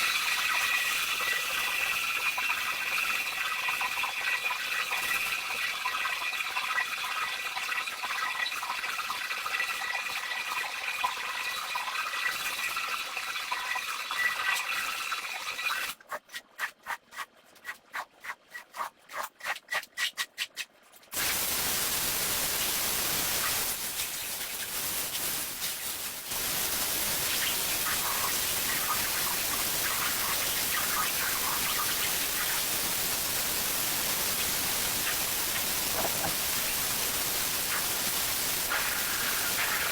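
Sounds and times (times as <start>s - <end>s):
scrubbing strokes: 16.0s - 21.1s
spraying water hiss: 21.2s - 39.9s
wet hiss with faint whine: 21.2s - 39.9s.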